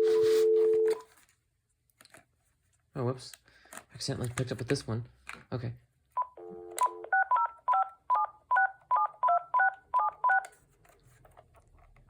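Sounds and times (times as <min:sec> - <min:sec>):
dial tone: 0:00.0 - 0:01.0.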